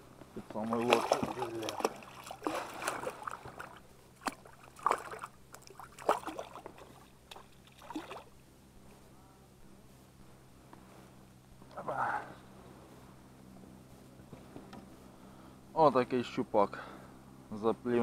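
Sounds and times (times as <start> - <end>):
water splashing: 0.5 - 8.3.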